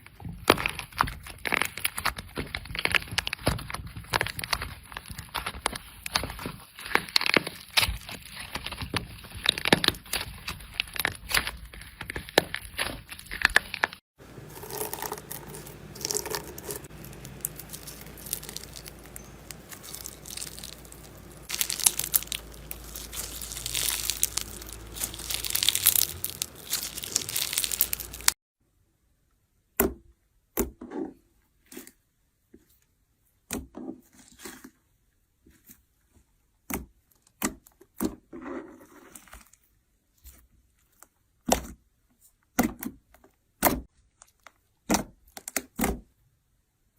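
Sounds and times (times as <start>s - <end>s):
slime squeezed by hand crackling: 0.4s - 28.4s.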